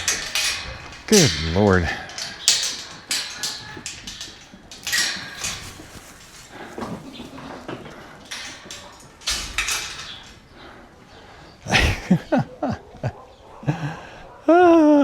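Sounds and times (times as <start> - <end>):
rustling: 0.0 - 11.6.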